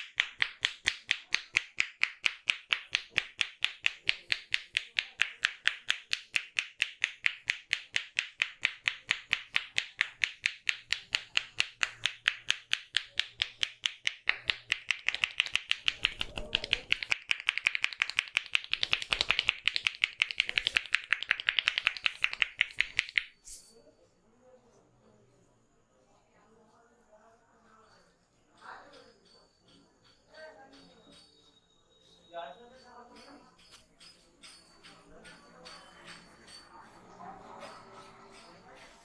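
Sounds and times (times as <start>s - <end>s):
hands tapping on head: 0.0s - 23.5s.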